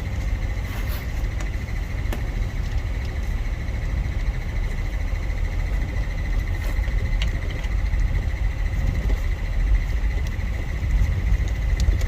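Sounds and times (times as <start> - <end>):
low machine rumble: 0.0 - 12.0.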